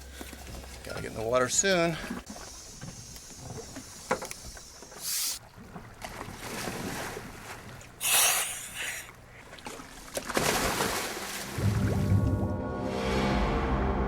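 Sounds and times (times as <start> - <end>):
water noise: 0.0 - 13.4
wind: 0.0 - 14.0
short rushing bursts: 8.0 - 9.1.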